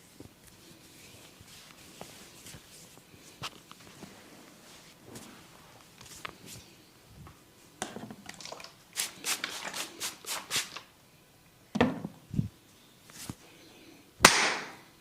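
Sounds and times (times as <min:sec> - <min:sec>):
hands rubbing skin: 0:00.4 - 0:06.7
sharp hand strikes: 0:14.2 - 0:14.8.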